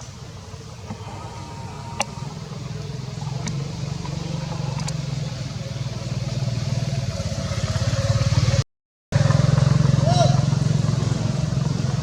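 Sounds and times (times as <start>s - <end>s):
motorcycle engine running: 1.9s - 12.0s
faint clicks: 3.3s - 5.0s.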